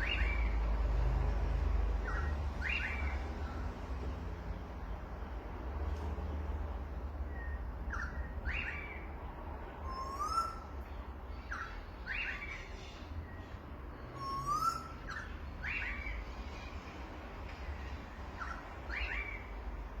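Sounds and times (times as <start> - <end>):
birds calling: 0.0 - 5.3, 7.2 - 20.0.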